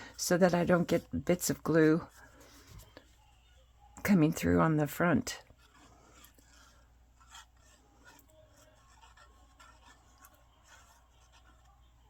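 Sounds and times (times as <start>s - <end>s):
faint paper rustling: 0.0s - 3.2s.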